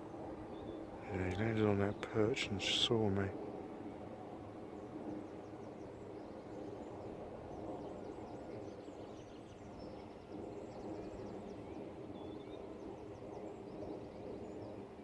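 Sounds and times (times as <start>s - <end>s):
small songbirds chirping: 0.2s - 3.3s, 5.2s - 14.9s
low outdoor rumble: 0.8s - 3.4s.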